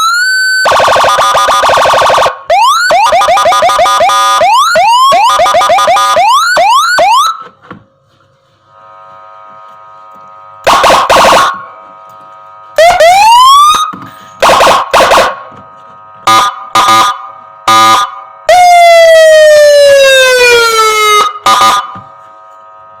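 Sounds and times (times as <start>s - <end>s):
electronic siren whooping and wailing: 0.0s - 7.6s, 10.6s - 11.8s, 12.8s - 15.6s, 16.2s - 22.2s.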